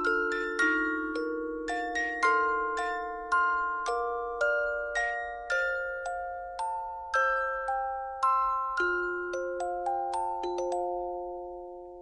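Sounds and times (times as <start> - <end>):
gentle bell-like melody: 0.0 - 12.0.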